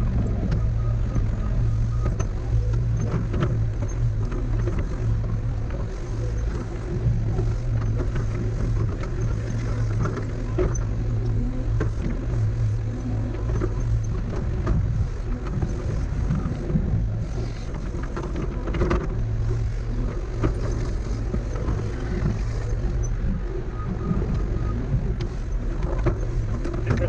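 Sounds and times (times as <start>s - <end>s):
excavator diesel engine running: 26.7s - 27.0s.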